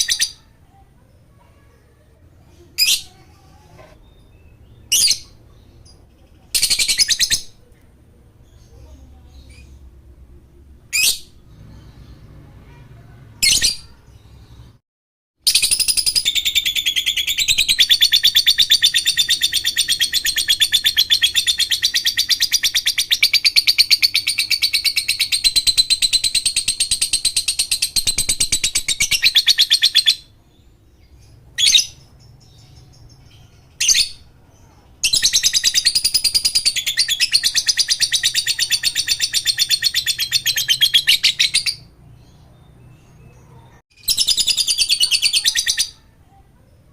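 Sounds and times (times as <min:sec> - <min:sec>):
lovebird chirps: 0:02.4 - 0:07.7, 0:08.4 - 0:09.9, 0:15.5 - 0:46.0
lovebird chattering trill: 0:15.5 - 0:30.3, 0:35.0 - 0:41.9, 0:44.0 - 0:46.0.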